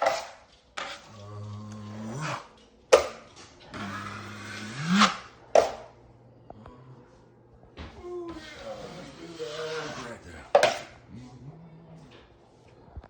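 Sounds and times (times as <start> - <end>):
drywall knife scraping compound: 0.0 - 1.2, 3.7 - 5.2, 8.3 - 10.8
low hum: 3.6 - 9.4.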